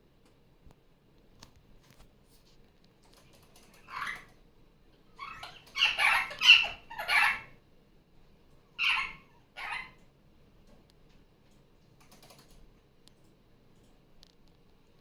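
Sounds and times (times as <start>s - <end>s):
parakeet squawking: 3.8s - 4.3s, 5.2s - 7.6s, 8.8s - 10.0s.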